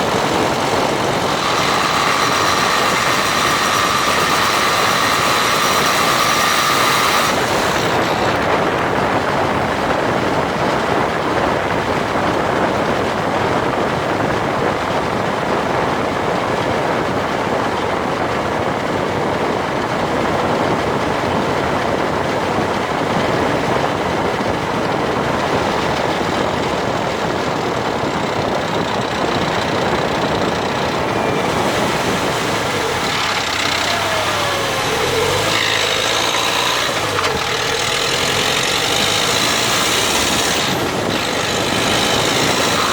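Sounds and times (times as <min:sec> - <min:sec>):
car engine and drivetrain noise: 0:00.0 - 0:42.9.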